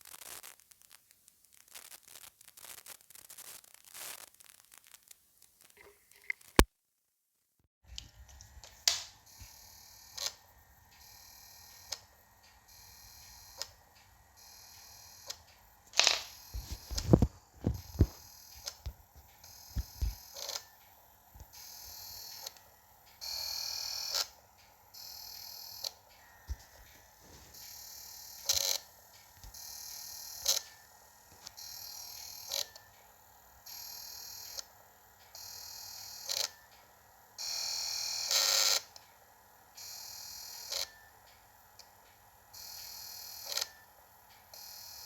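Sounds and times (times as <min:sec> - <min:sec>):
steady hiss: 0:08.1 - 0:37.4.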